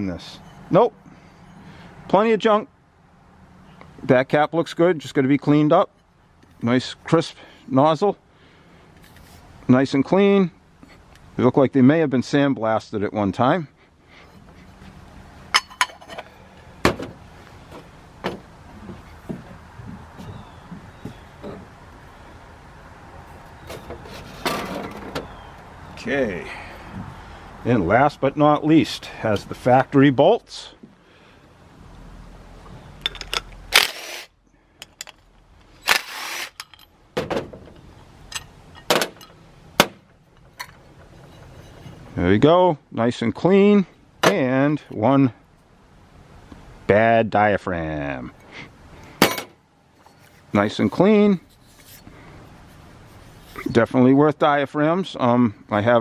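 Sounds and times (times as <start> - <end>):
metal parts clinking and knocking: 15.5 - 16.3, 33.0 - 34.0, 34.8 - 39.4, 40.3 - 42.0.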